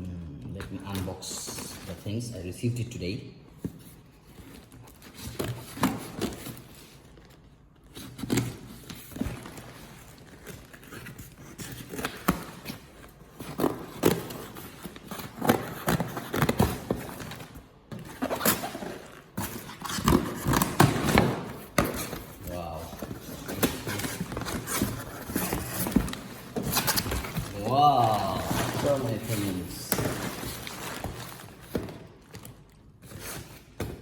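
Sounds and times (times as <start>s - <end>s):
cardboard box rustling and knocking: 13.4s - 32.5s.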